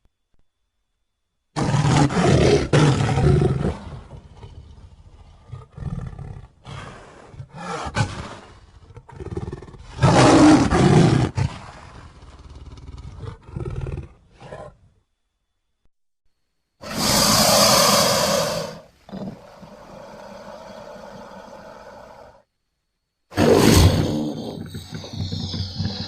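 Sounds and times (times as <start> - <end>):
monster growling roars: 23.4 - 26.0.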